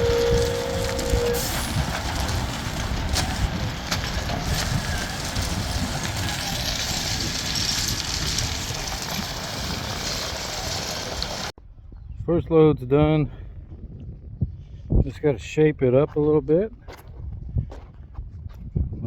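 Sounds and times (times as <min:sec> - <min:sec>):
conveyor truck rumbling: 0:00.0 - 0:11.5.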